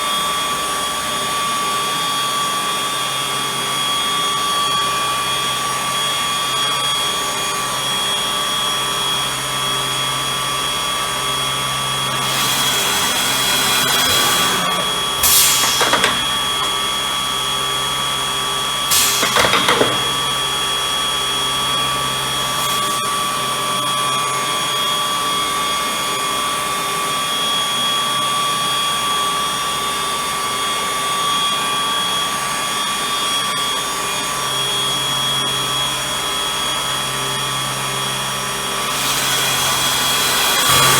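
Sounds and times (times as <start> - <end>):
router spindles whining: 8.7 - 18.2, 21.5 - 23.0, 38.4 - 40.9
router cutting into wood: 10.2 - 17.6, 18.9 - 20.5, 22.4 - 23.0, 38.6 - 40.9.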